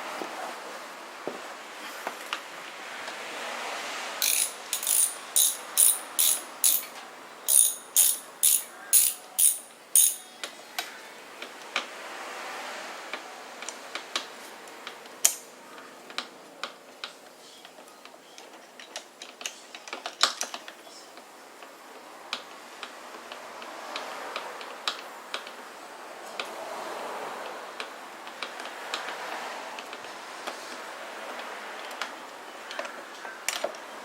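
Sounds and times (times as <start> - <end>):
clicks and taps of hand tools: 4.2 - 10.3.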